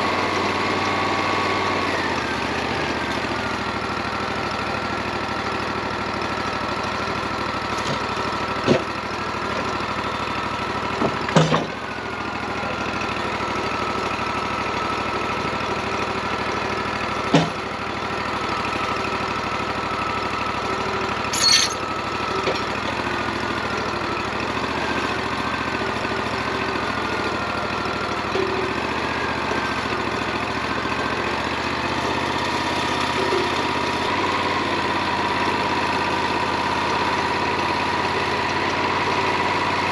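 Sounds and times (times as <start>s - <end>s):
bandsaw mill running: 0.0s - 39.9s
sharp knocks or clanks: 17.3s - 17.6s.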